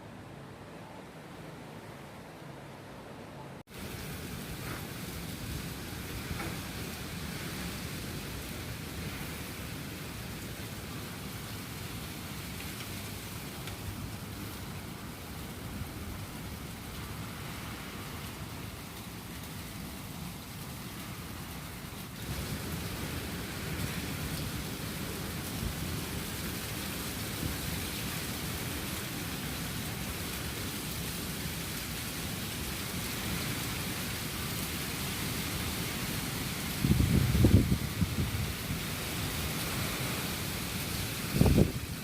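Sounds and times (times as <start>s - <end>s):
rain: 0.0s - 42.0s
strong wind: 35.3s - 42.0s.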